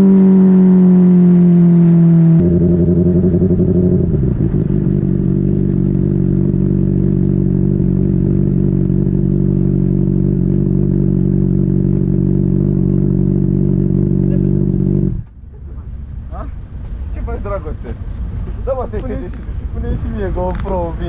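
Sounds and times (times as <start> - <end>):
motorcycle engine idling: 2.4 - 16.6.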